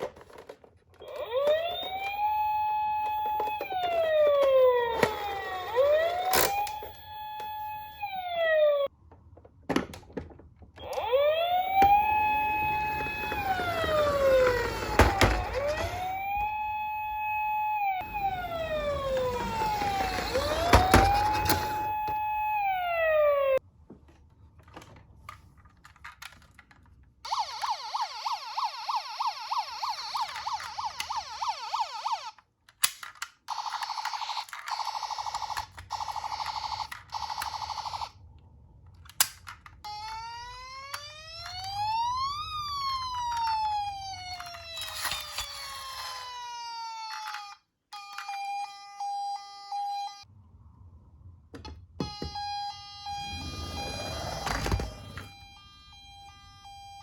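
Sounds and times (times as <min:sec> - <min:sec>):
electronic siren: 0:01.0 - 0:08.9, 0:10.8 - 0:23.6, 0:27.3 - 0:32.4, 0:39.8 - 0:50.3, 0:52.0 - 0:57.0.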